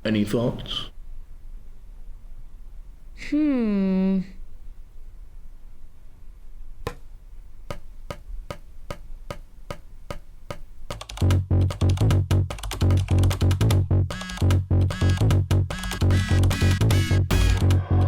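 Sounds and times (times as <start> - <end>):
steady click track: 7.7 - 18.0
electronic beat with heavy bass: 13.4 - 18.0.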